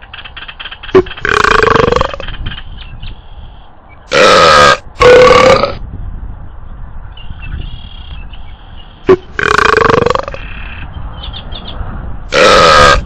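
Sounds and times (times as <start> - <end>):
loud belches: 1.0 - 2.2, 4.1 - 5.8, 9.1 - 10.4, 12.3 - 13.0.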